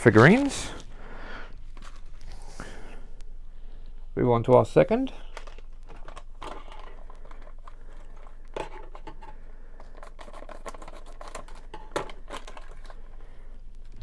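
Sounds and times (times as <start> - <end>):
packaging crinkling and scratching: 0.0 - 2.5, 4.9 - 14.0.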